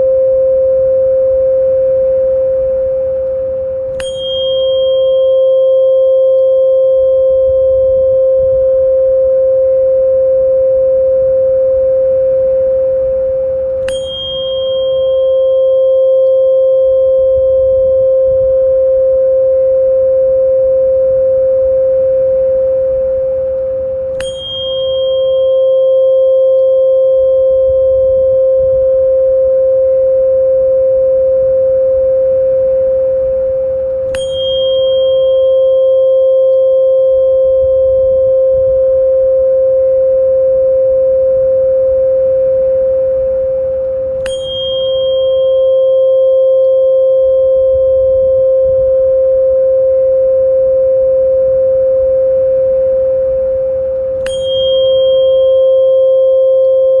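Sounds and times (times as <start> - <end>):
steady pure tone: 0.0 - 57.0
soft struck metallic ring: 3.2 - 8.5, 12.2 - 18.6, 22.0 - 29.2, 32.4 - 38.8, 42.2 - 49.5, 52.4 - 57.0.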